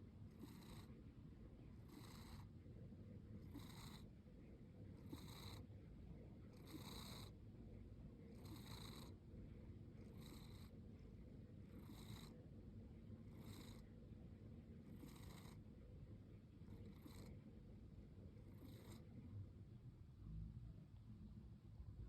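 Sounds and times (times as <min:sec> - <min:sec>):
low steady rumble: 0:00.0 - 0:22.0
cat snoring softly: 0:00.3 - 0:01.1, 0:01.7 - 0:02.6, 0:03.3 - 0:04.2, 0:04.9 - 0:05.7, 0:06.4 - 0:07.4, 0:08.2 - 0:09.3, 0:09.9 - 0:10.9, 0:11.6 - 0:12.5, 0:13.2 - 0:14.0, 0:14.8 - 0:15.8, 0:16.6 - 0:17.6, 0:18.3 - 0:19.2.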